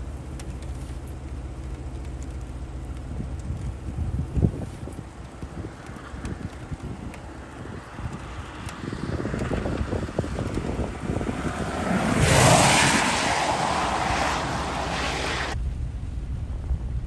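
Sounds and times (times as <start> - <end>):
wind buffeting microphone: 3.0 - 15.6.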